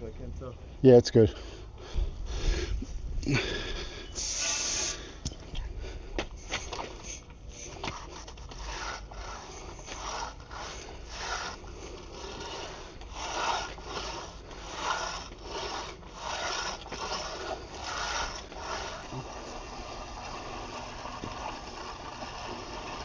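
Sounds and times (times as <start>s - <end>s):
tool scraping wet concrete: 6.4s - 23.0s.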